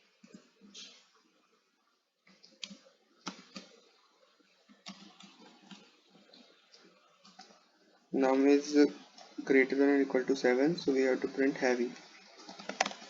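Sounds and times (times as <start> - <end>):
typing on computer keyboard: 2.5 - 3.7, 4.8 - 5.9, 12.4 - 13.0.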